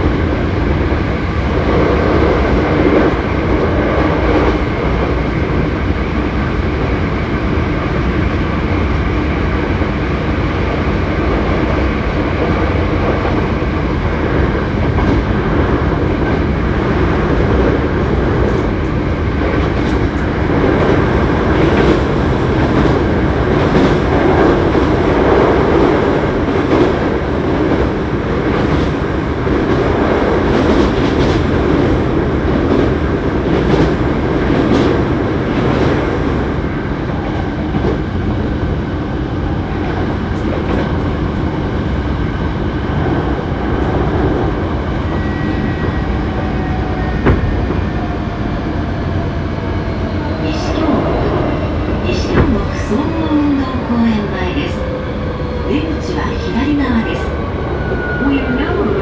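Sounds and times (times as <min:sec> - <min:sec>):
train wheels rumbling on rail: 0:00.0 - 0:59.0
train motor hum: 0:09.8 - 0:59.0.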